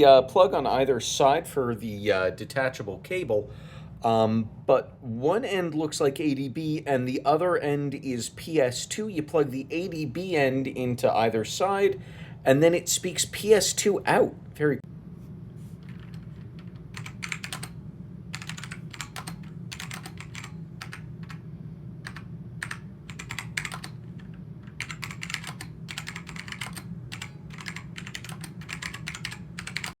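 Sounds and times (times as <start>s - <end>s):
low steady hum: 0.0s - 30.0s
keyboard keystrokes clacking: 15.8s - 17.8s, 18.4s - 21.4s, 22.1s - 30.0s.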